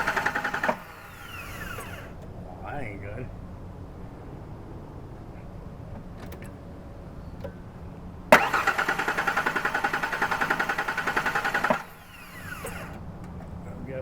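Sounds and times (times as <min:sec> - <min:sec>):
starter cranking engine: 0:00.0 - 0:02.2, 0:08.3 - 0:13.0.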